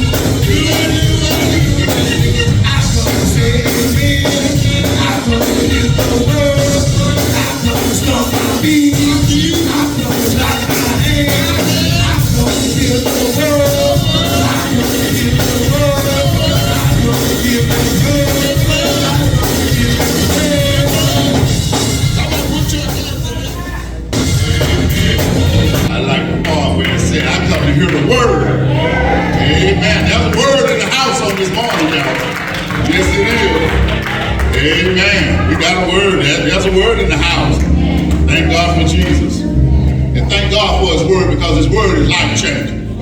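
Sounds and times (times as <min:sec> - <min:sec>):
singing: 0:00.0 - 0:24.0
band playing gospel music: 0:00.0 - 0:43.0.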